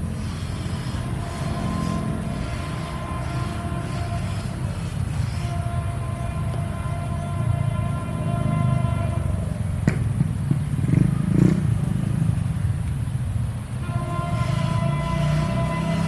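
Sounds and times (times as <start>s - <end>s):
wheezy locomotive horn chord: 0.0s - 9.6s, 13.8s - 16.0s.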